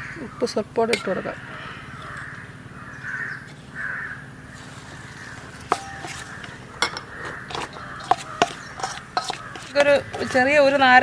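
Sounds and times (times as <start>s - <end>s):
crow cawing: 0.0s - 10.8s
utensil clinking against dishes: 5.6s - 11.0s.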